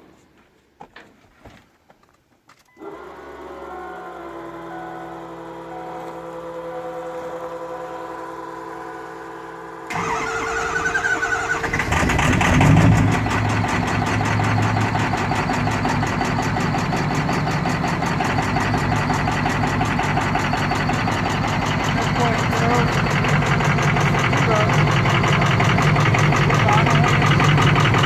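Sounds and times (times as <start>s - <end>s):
diesel engine idling: 2.8s - 28.0s
engine starter cranking: 9.9s - 28.0s.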